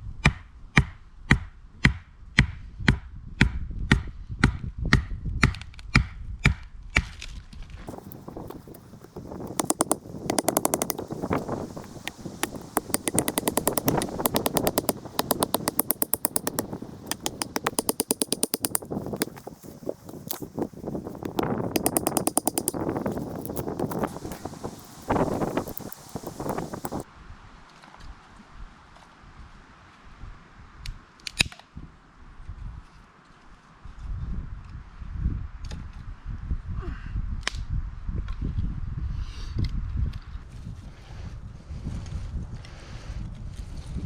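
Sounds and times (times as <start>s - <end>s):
fine clicking and crackling: 7.9s - 27.0s
firewood being chopped: 7.9s - 27.0s.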